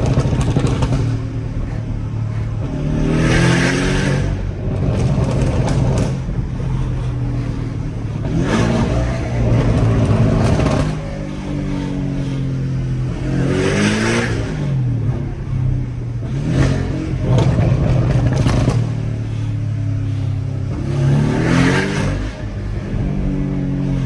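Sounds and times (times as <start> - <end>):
car engine accelerating hard: 0.0 - 24.0
exhaust crackles: 0.0 - 24.0.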